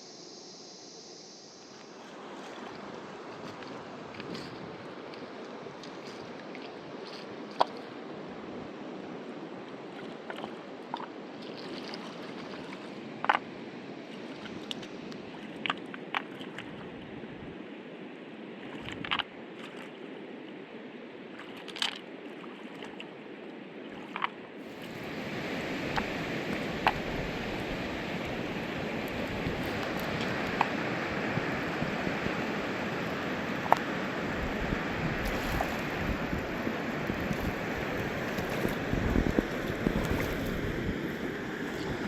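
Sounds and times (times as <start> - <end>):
river rushing: 24.6 - 42.0.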